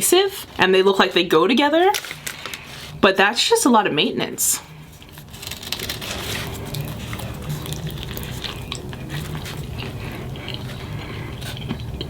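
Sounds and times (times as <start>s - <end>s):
close chewing mouth clicks: 6.7s - 12.0s.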